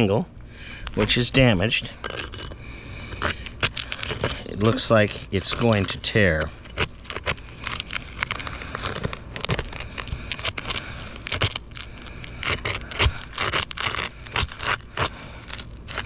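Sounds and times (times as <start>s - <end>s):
roof shingle tearing and scraping: 1.0s - 16.0s.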